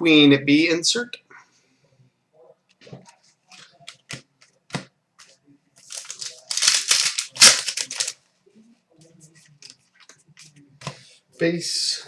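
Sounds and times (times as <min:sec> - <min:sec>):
card pack wrapper crinkling: 0:05.8 - 0:08.2
cards clicking and tapping: 0:05.9 - 0:08.1.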